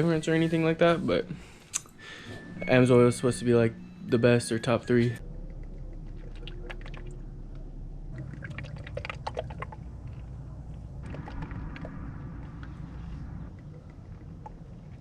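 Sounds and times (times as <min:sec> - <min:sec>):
oil pouring: 0:08.1 - 0:10.2.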